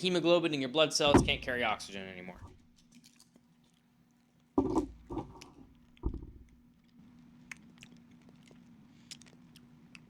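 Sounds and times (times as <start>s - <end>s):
dull knocks on microphone: 1.1s - 1.6s, 4.6s - 5.4s, 6.0s - 6.5s.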